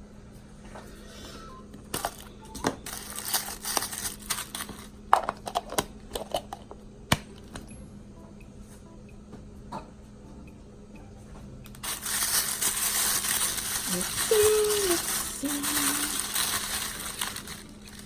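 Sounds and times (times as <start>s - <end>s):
plastic packaging crinkling: 2.0s - 5.8s, 11.8s - 18.0s.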